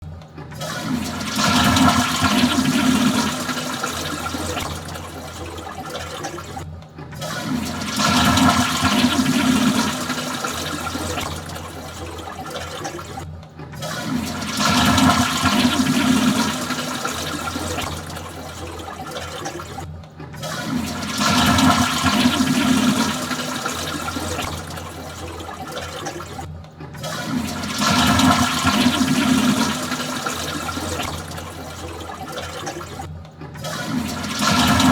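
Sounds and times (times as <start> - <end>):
toilet flushing: 0.5 - 34.9.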